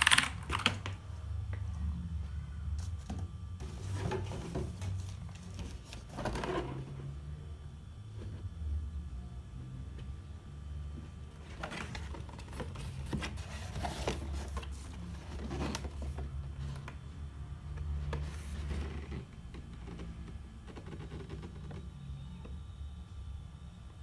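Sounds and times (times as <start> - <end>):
mechanical keyboard clicking: 0.0 - 1.0
steady low hum: 0.0 - 24.0.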